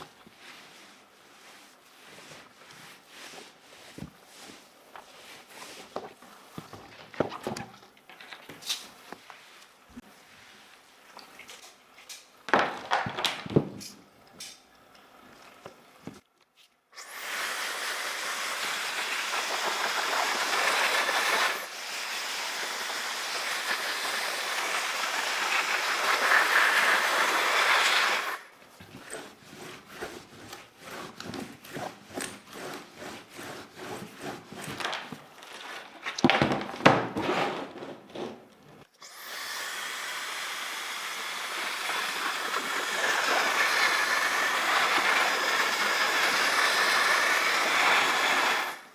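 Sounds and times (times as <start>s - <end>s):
clicking and rubbing: 28.7s - 38.9s.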